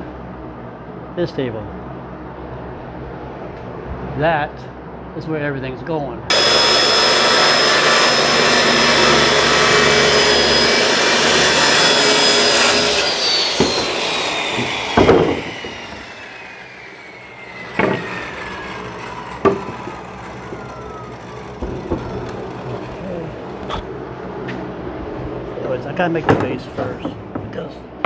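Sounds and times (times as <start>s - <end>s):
electric motor whining: 6.3s - 23.9s
sharp knocks: 11.8s - 16.1s, 17.7s - 18.2s, 19.4s - 19.9s.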